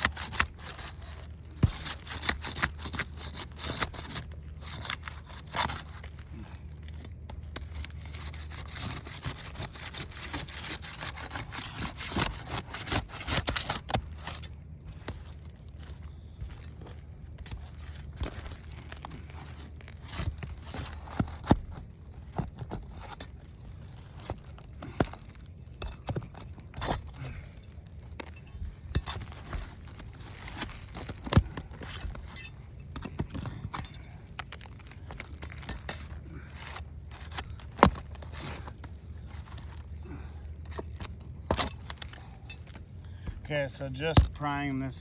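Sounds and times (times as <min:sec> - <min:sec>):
pry bar scraping on roof shingles: 0:00.0 - 0:06.2, 0:07.5 - 0:15.4
brittle shingles cracking: 0:00.0 - 0:43.3.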